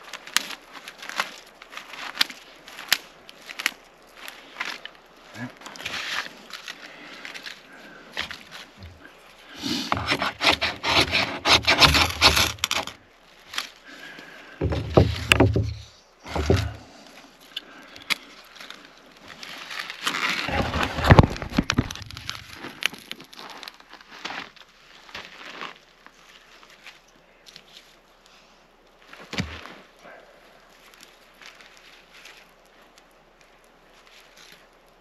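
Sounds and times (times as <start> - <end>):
dry branches snapping: 0.0 - 8.8, 11.5 - 14.0, 17.4 - 25.8.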